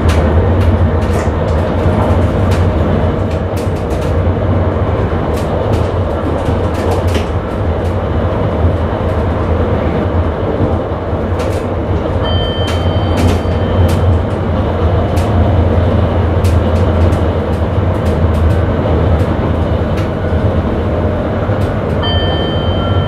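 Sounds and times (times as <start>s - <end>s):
train rumble and hum: 0.0s - 23.0s
wheels clicking over rail joints: 0.0s - 23.0s
thin high tone: 22.0s - 23.0s.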